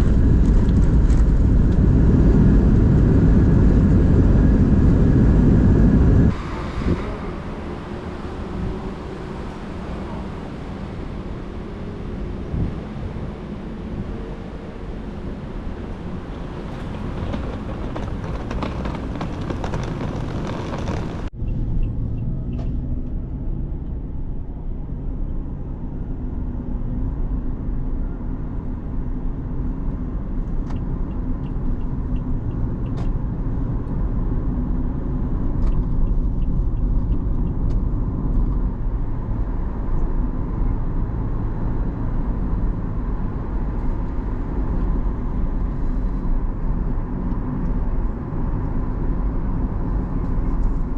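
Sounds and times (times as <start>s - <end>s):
wind noise rushing: 0.0s - 21.3s
car engine and tyre rumble: 0.0s - 50.9s.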